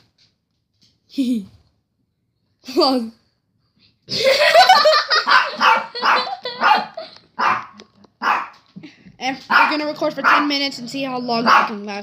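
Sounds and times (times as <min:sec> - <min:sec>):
dog barking: 0:05.1 - 0:08.6, 0:09.5 - 0:10.6, 0:11.4 - 0:11.9.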